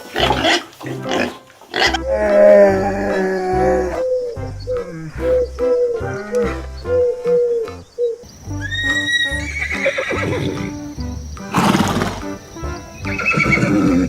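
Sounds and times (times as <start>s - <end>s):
background music with steady beat: 0.0s - 14.0s
horse neighing: 0.2s - 7.6s, 8.6s - 10.8s, 13.1s - 14.0s.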